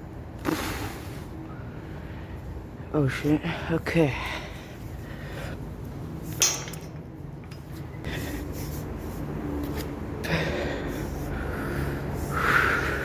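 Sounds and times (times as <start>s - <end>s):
person breathing hard: 4.2s - 5.8s, 8.0s - 9.0s, 10.1s - 13.0s.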